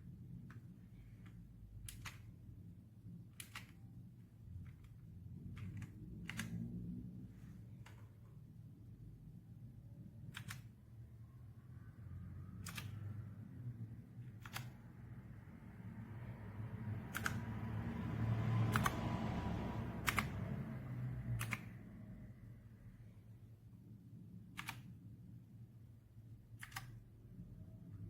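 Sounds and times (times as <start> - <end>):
mechanical keyboard key clicks: 1.2 - 2.4, 3.3 - 3.8, 4.6 - 6.7, 10.2 - 10.8, 12.6 - 13.2, 14.2 - 14.9, 17.0 - 17.6, 18.6 - 19.1, 20.0 - 20.7, 21.3 - 21.8, 24.5 - 25.0, 26.6 - 27.0
low rumble: 4.1 - 10.1.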